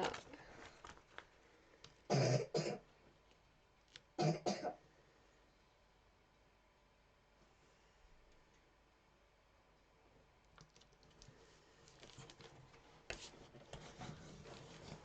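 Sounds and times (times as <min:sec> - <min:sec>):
person coughing: 0:02.1 - 0:02.8, 0:04.2 - 0:04.8.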